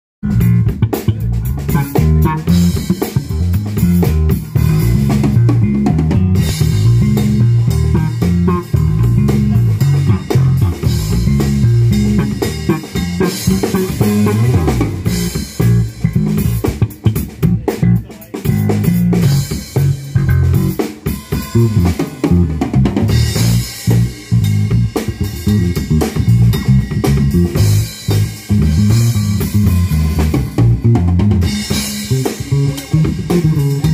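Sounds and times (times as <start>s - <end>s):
bass guitar groove: 0.2s - 33.9s
drum kit: 0.2s - 33.9s.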